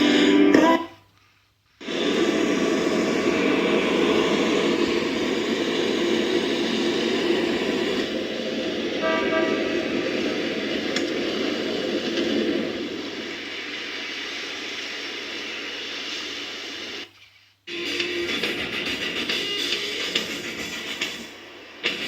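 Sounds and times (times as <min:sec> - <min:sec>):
dense rushing noise: 0:01.8 - 0:17.1.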